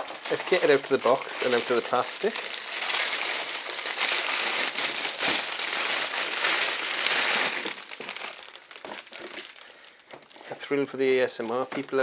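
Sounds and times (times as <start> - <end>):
plastic wrapping crinkling: 0.0 - 12.0.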